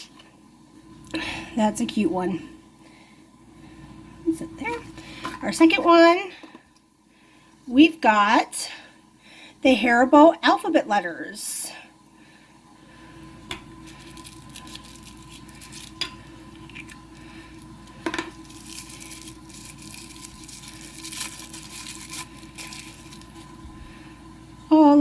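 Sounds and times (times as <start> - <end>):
faint steady hum: 0.0 - 25.0
toy packaging crinkling: 13.8 - 16.1, 16.7 - 23.6.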